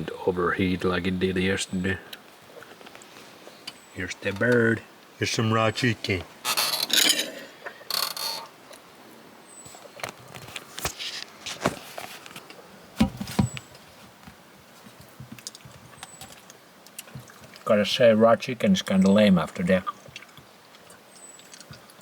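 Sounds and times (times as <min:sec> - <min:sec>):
close-up chewing: 0:20.0 - 0:22.0.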